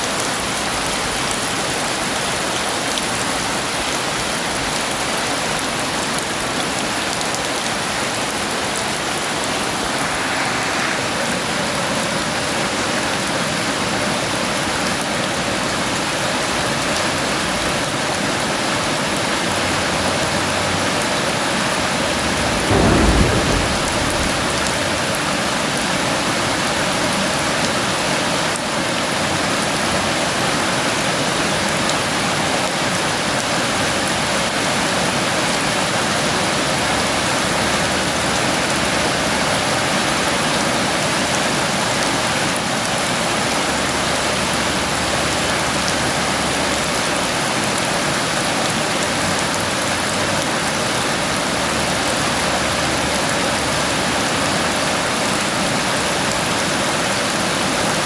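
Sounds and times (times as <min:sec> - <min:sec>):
heavy rain falling: 0:00.0 - 0:58.0
low rumble of thunder: 0:20.1 - 0:26.7.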